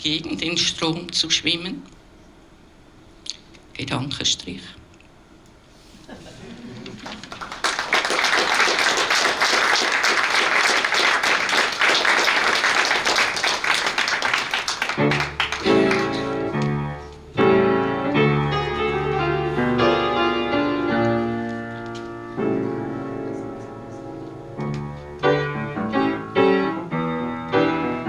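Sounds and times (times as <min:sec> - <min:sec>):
audience applauding: 0:06.7 - 0:16.4
piano playing notes and chords: 0:14.9 - 0:28.0.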